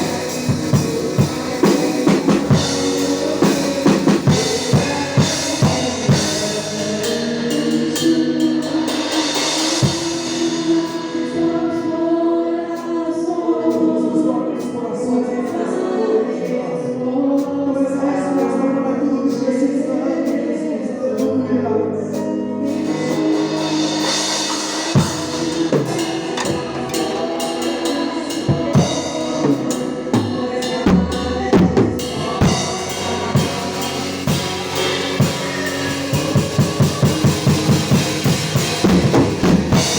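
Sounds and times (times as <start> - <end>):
drum kit: 0.0 - 12.0, 22.2 - 39.9
voices singing: 0.0 - 39.9.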